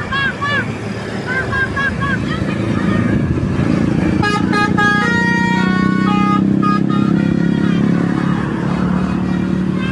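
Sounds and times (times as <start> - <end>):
engine drone: 0.0 - 9.9
multi-tone bus air horn melody: 4.1 - 9.9.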